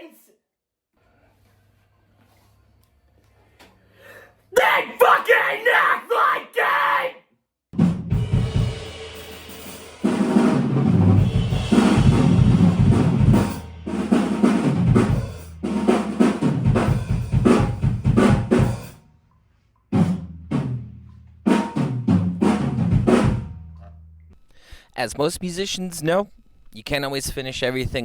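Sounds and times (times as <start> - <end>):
loud band music: 7.8 - 18.8.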